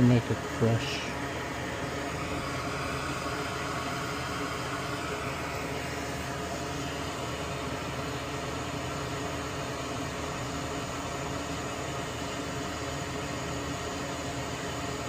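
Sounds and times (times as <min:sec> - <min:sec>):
fan hiss and hum: 0:00.0 - 0:15.0.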